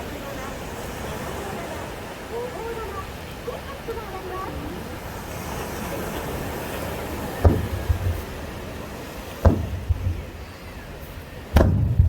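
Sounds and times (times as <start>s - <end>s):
crowd noise outdoors: 0.0s - 12.0s
fireworks bursting with bangs: 7.2s - 12.0s
low rumbling echo: 7.4s - 12.0s.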